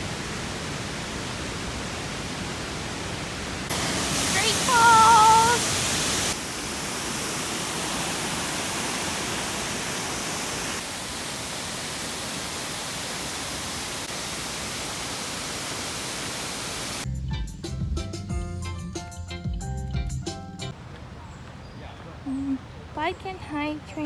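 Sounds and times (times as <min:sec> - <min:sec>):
waterfall rushing over rocks: 0:00.0 - 0:17.0
music: 0:17.1 - 0:20.7.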